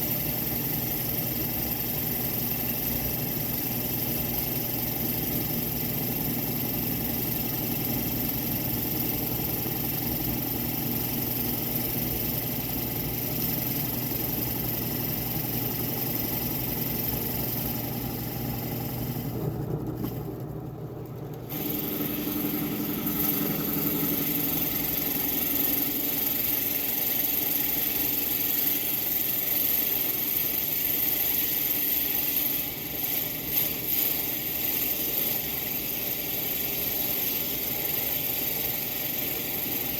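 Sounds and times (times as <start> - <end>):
power tool motor whirring: 21.5 - 27.6.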